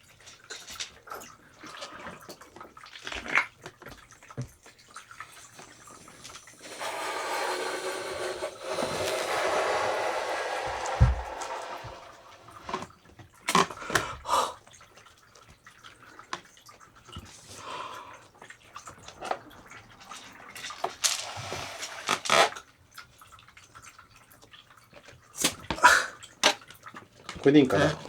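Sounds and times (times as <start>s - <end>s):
decorations and balloons handled: 5.7s - 12.8s.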